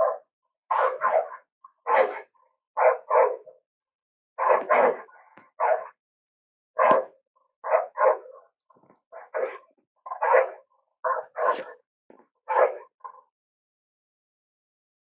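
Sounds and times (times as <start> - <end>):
cartoon hyena yelping barks: 0.0 - 3.5, 4.4 - 5.9, 6.8 - 8.5, 9.2 - 11.8, 12.5 - 13.2.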